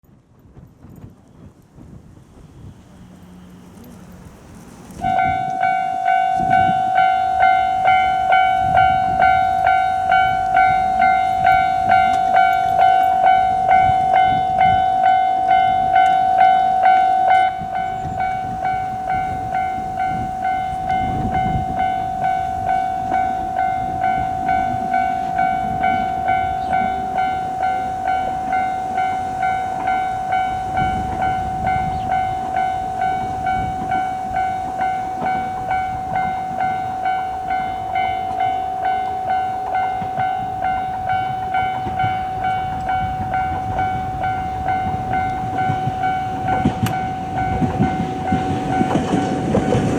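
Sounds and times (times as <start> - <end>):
low rumbles: 1.8 - 49.9
level crossing warning bell: 3.2 - 49.9.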